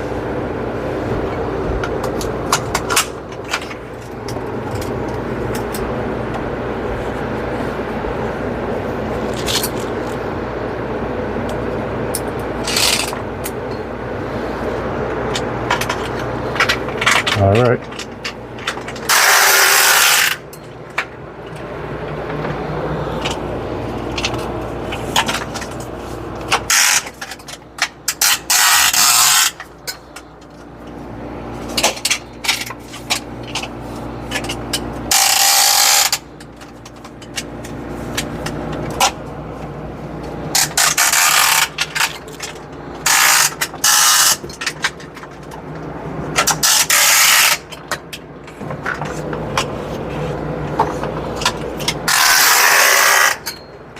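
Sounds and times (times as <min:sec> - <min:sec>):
ratchet clicks: 0:12.6 - 0:13.2, 0:28.1 - 0:30.0, 0:34.4 - 0:36.3, 0:40.6 - 0:42.4, 0:43.0 - 0:44.7, 0:46.4 - 0:47.8, 0:51.8 - 0:53.6
rope ratchet zipping: 0:12.6 - 0:13.2, 0:19.0 - 0:20.4, 0:26.7 - 0:27.3, 0:28.1 - 0:29.7, 0:35.1 - 0:36.3, 0:40.5 - 0:42.2, 0:43.0 - 0:44.4, 0:46.4 - 0:47.7, 0:52.1 - 0:53.6.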